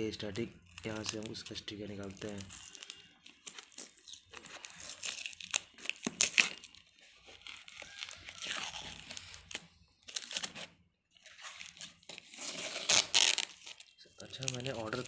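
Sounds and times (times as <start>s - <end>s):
packaging crinkling: 0.4s - 15.0s.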